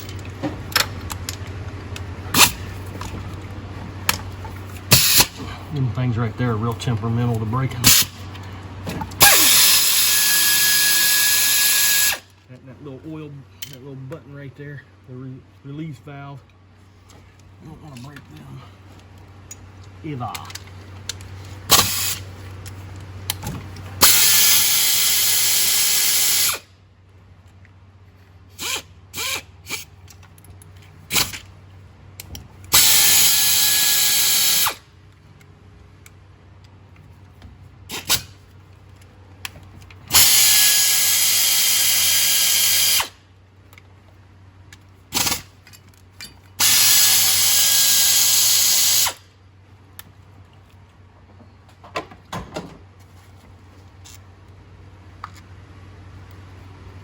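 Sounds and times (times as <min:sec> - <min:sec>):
handheld power tool running: 0:09.2 - 0:12.2, 0:21.7 - 0:22.2, 0:24.0 - 0:26.6, 0:28.6 - 0:29.9, 0:32.7 - 0:34.8, 0:40.1 - 0:43.2, 0:45.1 - 0:45.5, 0:46.6 - 0:49.2.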